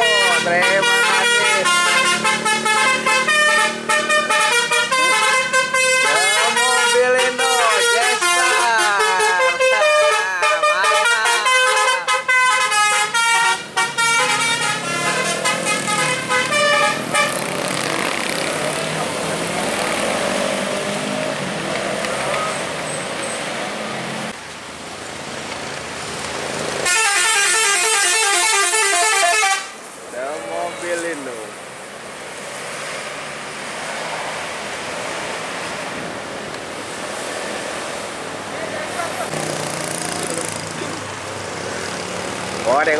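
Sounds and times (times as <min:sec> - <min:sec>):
bus horn playing a tune: 0:00.0 - 0:17.5, 0:26.8 - 0:29.8
road traffic roar: 0:00.0 - 0:42.9.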